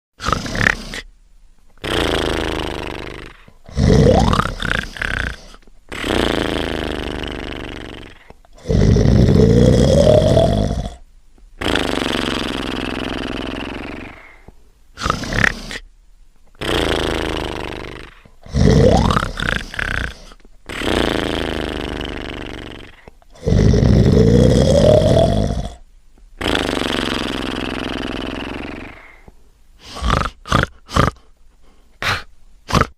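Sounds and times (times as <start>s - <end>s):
cartoon snoring: 0.2s - 1.1s, 1.8s - 11.0s, 11.6s - 15.9s, 16.6s - 25.8s, 26.4s - 31.4s, 32.0s - 32.9s.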